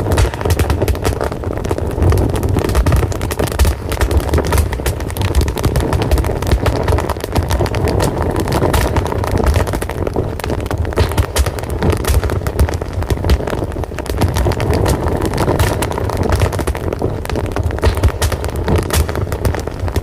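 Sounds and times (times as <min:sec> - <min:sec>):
fire crackling and popping: 0:00.0 - 0:20.0.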